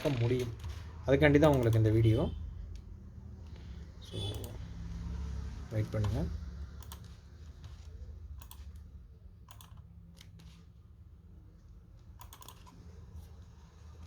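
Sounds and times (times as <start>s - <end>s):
keyboard keys clicking: 12.2s - 12.8s.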